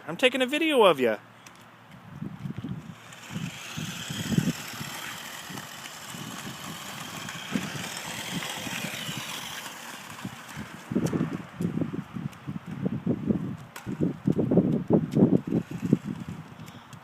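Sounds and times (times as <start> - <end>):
toy car motor whirring: 2.5 - 11.4, 15.3 - 17.0.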